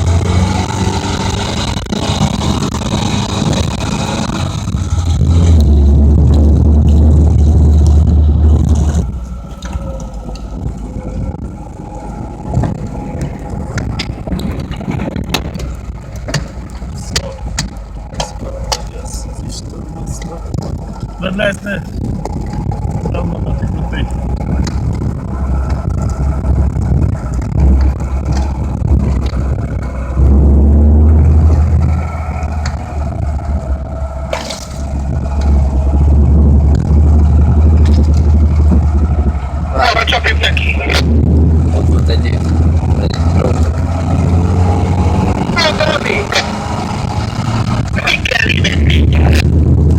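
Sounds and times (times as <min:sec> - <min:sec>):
off-road vehicle engine running: 0:00.0 - 0:49.9
sharp clicks and knocks: 0:12.5 - 0:19.0, 0:24.0 - 0:29.9, 0:31.4 - 0:32.8, 0:36.7 - 0:38.9.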